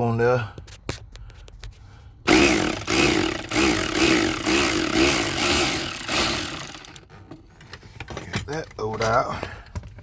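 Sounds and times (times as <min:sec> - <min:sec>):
power tool motor pulsing: 0:02.3 - 0:07.0.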